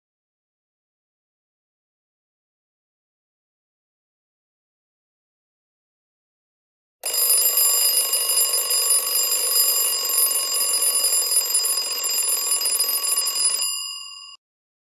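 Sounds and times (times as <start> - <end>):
alarm clock bell ringing: 7.0 - 14.4.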